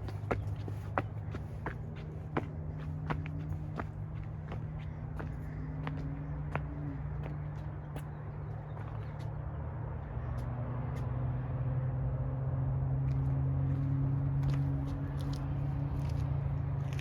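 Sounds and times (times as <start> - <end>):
footsteps on stairs: 0.0 - 8.1
car engine hum: 0.0 - 17.0.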